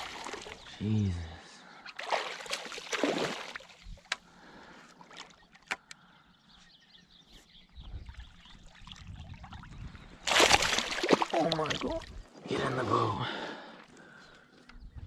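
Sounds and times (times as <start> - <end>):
fish splashing in water: 0.0 - 0.6, 2.0 - 3.8, 10.2 - 12.0.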